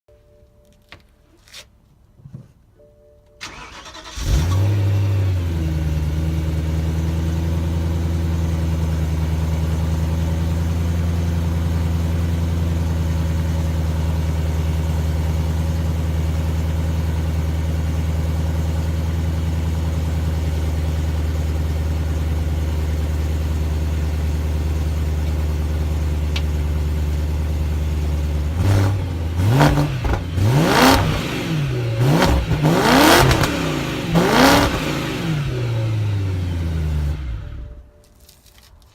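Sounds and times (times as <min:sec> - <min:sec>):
car engine starting and idling: 0:03.4 - 0:38.1
engine throttle blips: 0:23.9 - 0:38.0.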